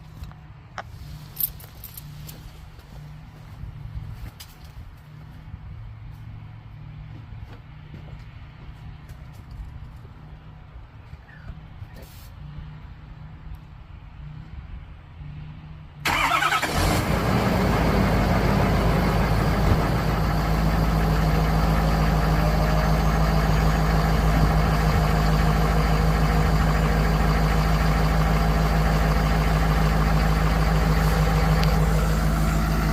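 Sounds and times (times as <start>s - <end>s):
diesel engine starting and idling: 16.0s - 32.9s.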